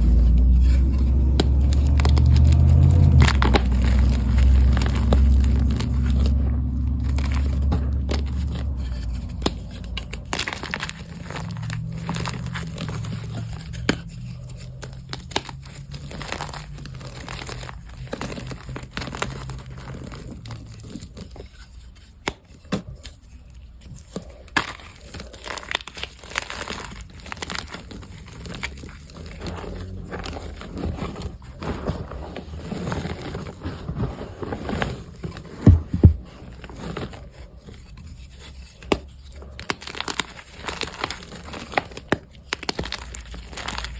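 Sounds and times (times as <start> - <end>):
chalk blocks crunching: 0.0 - 43.9.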